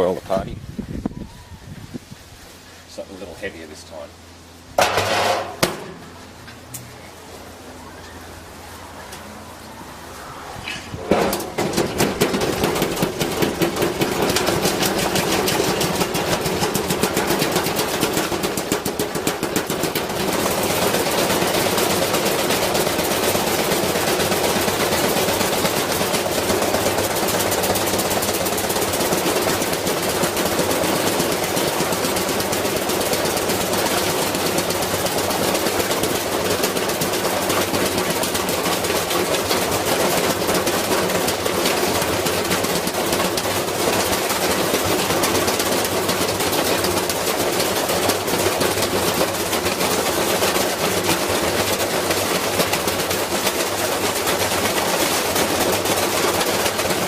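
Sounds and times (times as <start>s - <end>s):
washing machine spinning: 4.2s - 57.0s
brick banging against drum: 4.8s - 6.0s.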